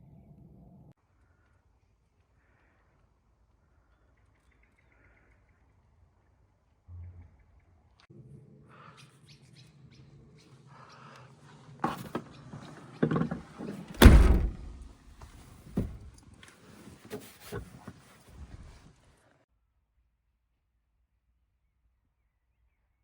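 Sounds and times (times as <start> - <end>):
knocks and thumps in a car: 13.0 - 16.1
heavy thud: 13.9 - 16.1.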